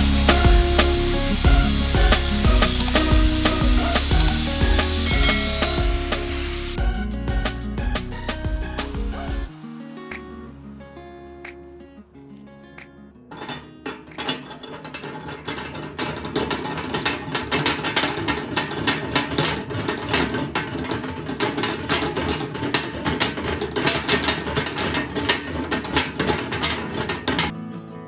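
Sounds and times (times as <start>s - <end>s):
music: 0.0s - 14.6s, 27.4s - 28.0s
mechanical clicking and rattling: 2.2s - 5.5s.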